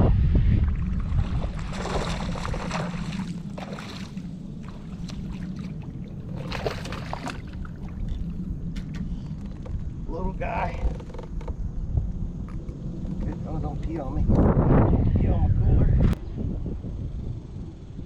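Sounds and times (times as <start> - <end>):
steady low rumble: 0.0 - 18.0
water splashing against kayak: 0.6 - 9.0.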